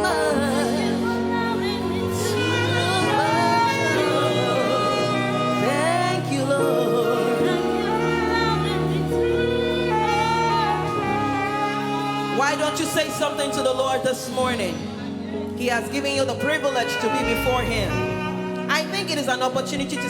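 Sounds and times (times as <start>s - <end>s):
person singing: 0.0s - 15.0s
sustained keyboard chords: 0.0s - 20.0s.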